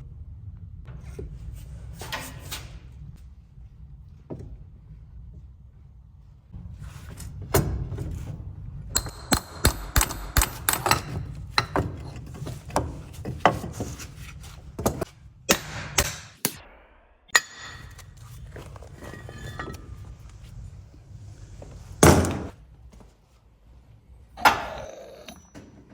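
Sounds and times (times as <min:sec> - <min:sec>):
steady low hum: 0:00.0 - 0:25.8
hand tools knocking on metal: 0:09.0 - 0:12.2.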